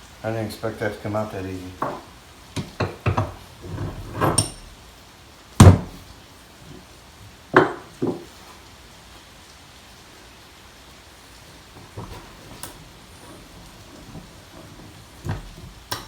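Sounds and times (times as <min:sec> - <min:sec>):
sledgehammer knocks: 0:05.6 - 0:06.0.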